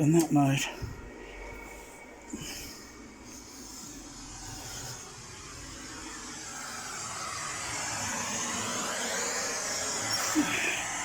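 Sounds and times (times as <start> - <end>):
low hum: 0.0 - 11.0
pink noise hiss: 2.2 - 11.0.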